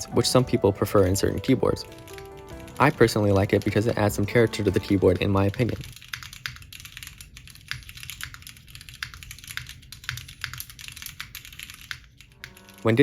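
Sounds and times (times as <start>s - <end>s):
mechanical keyboard typing: 0.3s - 13.0s.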